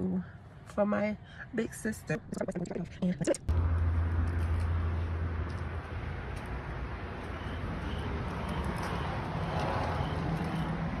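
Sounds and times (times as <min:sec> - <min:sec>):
vehicle rumble and hiss: 0:03.5 - 0:11.0.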